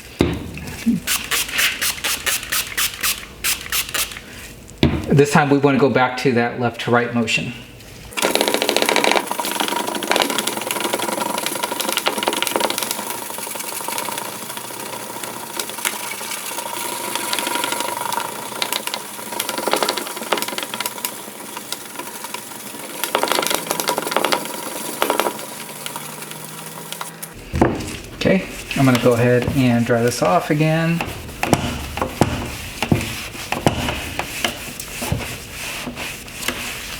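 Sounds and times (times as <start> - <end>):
hand sanding plastic: 0.7 - 4.6, 15.5 - 36.9.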